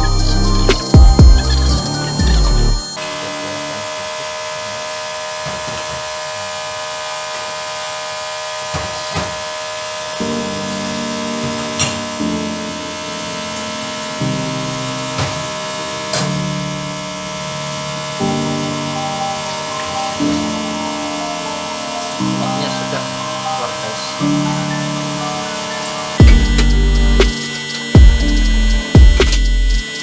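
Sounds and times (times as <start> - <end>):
steady buzzing hiss: 0.0 - 30.0
soft piano background music: 10.1 - 30.0.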